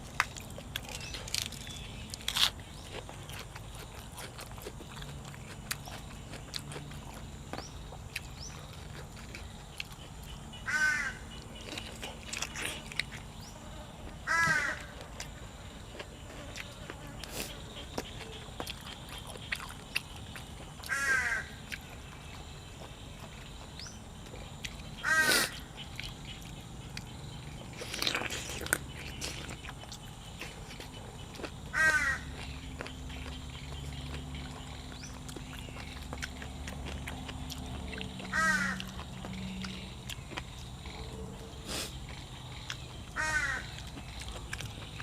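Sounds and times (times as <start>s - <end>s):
crow cawing: 10.7s - 11.3s, 14.3s - 15.0s, 20.8s - 21.6s, 25.0s - 25.7s, 31.7s - 32.4s, 38.3s - 38.9s, 43.2s - 43.8s.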